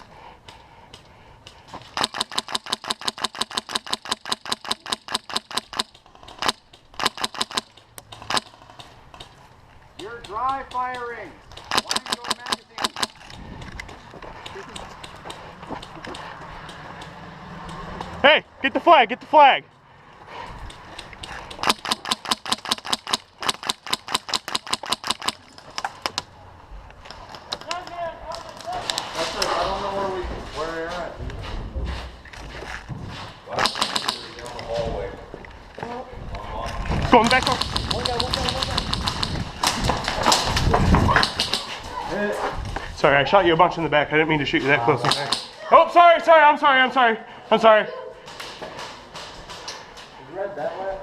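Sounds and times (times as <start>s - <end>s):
airsoft rifle firing full-auto: 2.0s - 7.7s, 11.7s - 13.1s, 21.6s - 25.4s, 33.6s - 34.3s, 37.3s - 39.4s.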